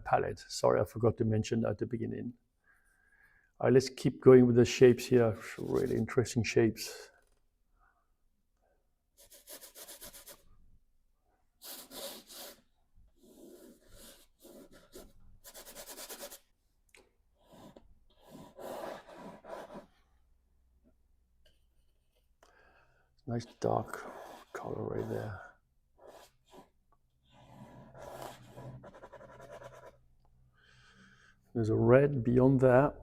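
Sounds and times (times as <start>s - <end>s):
paintbrush scrubbing canvas: 5.1s - 6.2s, 9.2s - 10.5s, 11.6s - 16.5s, 17.4s - 20.0s, 23.4s - 30.0s.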